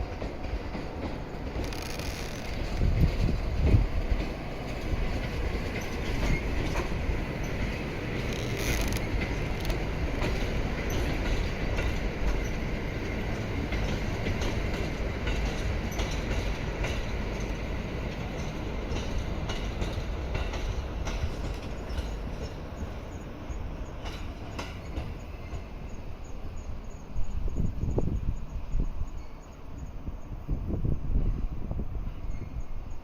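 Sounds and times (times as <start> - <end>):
wheels clicking over rail joints: 0.0 - 26.0
electric train rolling along track: 0.0 - 33.0.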